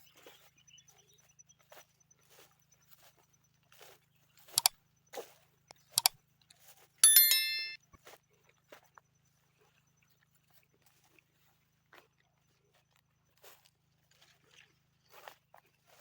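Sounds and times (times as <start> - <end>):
blade metallic ring: 7.0 - 7.8.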